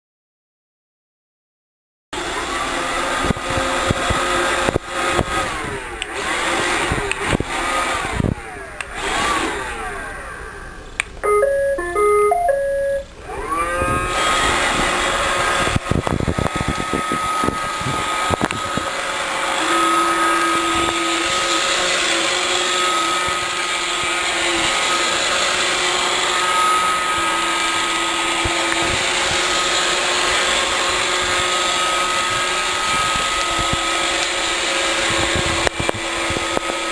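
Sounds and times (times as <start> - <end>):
robot vacuum motor noise: 2.2 - 10.9, 13.2 - 36.9
motors whining: 2.4 - 36.9
stepped beep tune: 11.2 - 13.1.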